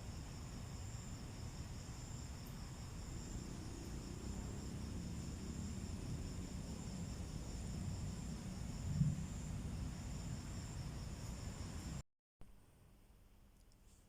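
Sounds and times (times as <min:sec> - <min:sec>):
crickets trilling: 0:00.0 - 0:12.0
low even rumble: 0:04.5 - 0:11.0.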